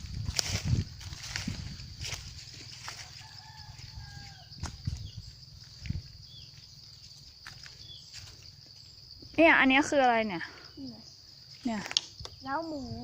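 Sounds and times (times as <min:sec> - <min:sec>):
footsteps in leaf litter: 0:00.0 - 0:05.1
high insect drone: 0:00.0 - 0:13.0.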